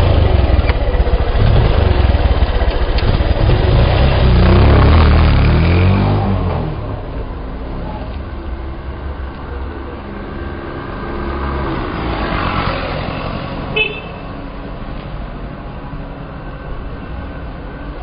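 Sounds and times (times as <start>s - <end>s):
motorcycle engine running: 0.0s - 5.4s
traffic noise: 0.0s - 18.0s
horn beep: 13.7s - 14.3s.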